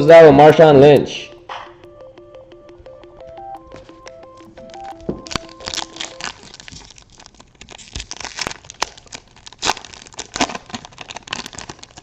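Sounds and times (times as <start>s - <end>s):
foil wrapper crinkling and tearing: 5.7s - 12.0s.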